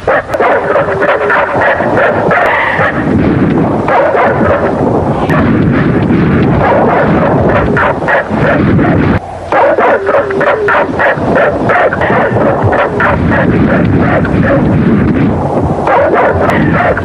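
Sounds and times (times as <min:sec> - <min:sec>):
rumbling crashes and explosions: 0:01.6 - 0:09.2, 0:11.2 - 0:17.0
monster roars and cries: 0:06.4 - 0:14.7.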